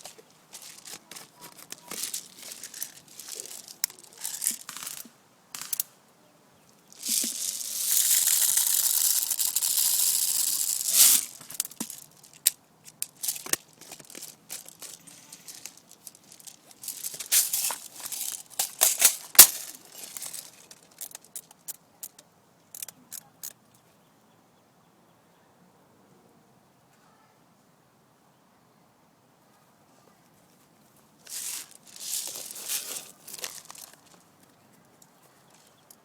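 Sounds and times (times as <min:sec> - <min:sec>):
rustling close to microphone: 0:00.0 - 0:05.8, 0:06.8 - 0:21.7, 0:30.4 - 0:34.3.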